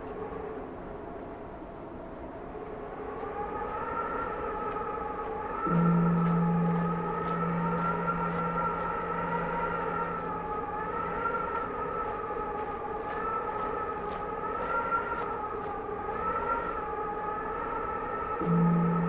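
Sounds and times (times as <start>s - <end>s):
wind howling: 0.0s - 19.0s
faint footsteps: 2.5s - 19.0s
temple bell hum: 5.3s - 17.6s, 18.3s - 19.0s.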